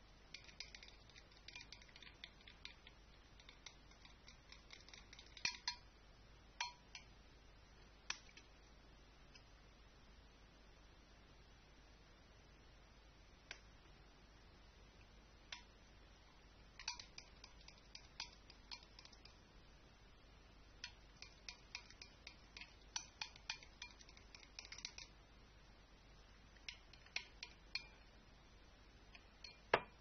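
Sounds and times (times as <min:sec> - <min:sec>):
small hard objects clicking: 0:00.3 - 0:05.8, 0:16.8 - 0:19.5, 0:20.8 - 0:25.2.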